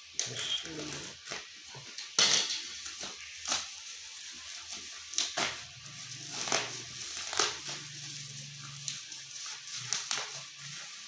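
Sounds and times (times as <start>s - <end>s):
packaging crinkling: 2.6s - 11.0s.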